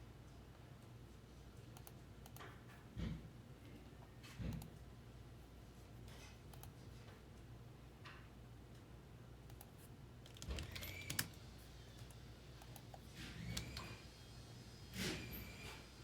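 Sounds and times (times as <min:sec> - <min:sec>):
faint keyboard typing: 0:01.5 - 0:02.8, 0:06.4 - 0:07.2, 0:08.7 - 0:13.9.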